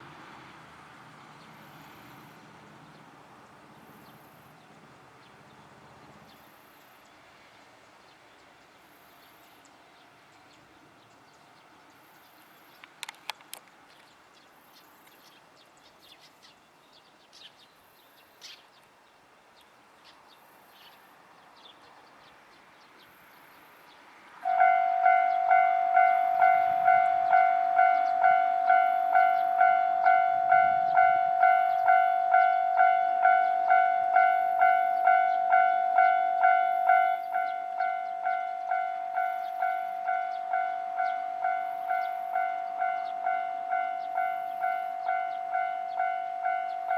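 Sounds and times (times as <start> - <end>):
faint outdoor ambience: 0.0 - 46.9
level crossing alarm clanging: 24.4 - 46.9.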